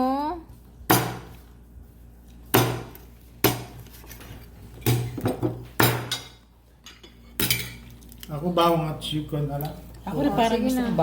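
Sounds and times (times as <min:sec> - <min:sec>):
kitchenware heavy strikes: 0:02.5 - 0:03.8, 0:04.8 - 0:07.8.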